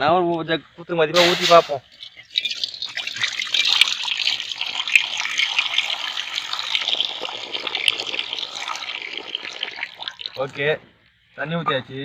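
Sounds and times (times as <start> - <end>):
water pouring into hot wok: 1.2 - 10.6.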